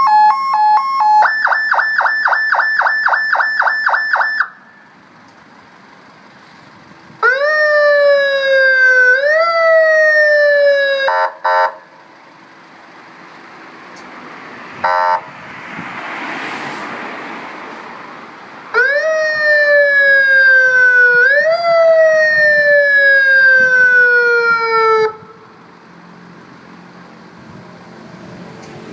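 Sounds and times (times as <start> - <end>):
electronic emergency siren: 0.0 - 4.8, 7.2 - 11.8, 14.8 - 15.3, 18.7 - 25.4.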